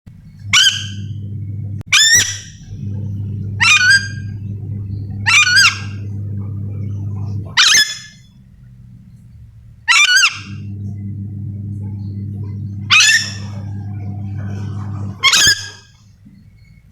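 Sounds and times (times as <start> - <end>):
low hum: 0.1 - 16.9
parrot screeching calls: 0.5 - 1.1, 7.6 - 8.3, 9.9 - 10.7.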